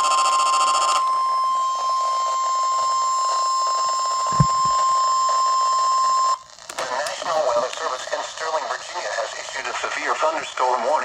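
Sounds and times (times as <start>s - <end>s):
steady alarm tone: 0.1s - 5.1s
short low thump: 4.3s - 4.8s.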